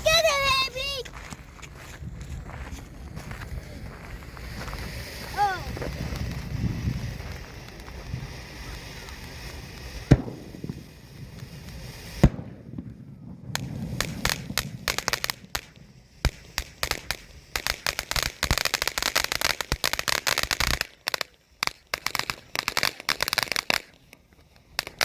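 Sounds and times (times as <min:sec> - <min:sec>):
firework fountain crackling: 0:00.0 - 0:25.0
loud pop: 0:10.0 - 0:11.5, 0:12.2 - 0:17.8.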